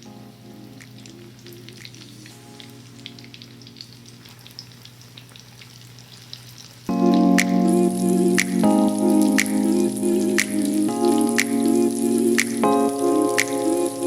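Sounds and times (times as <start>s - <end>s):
meat frying in hot oil: 3.0s - 6.9s
background music: 6.9s - 14.0s.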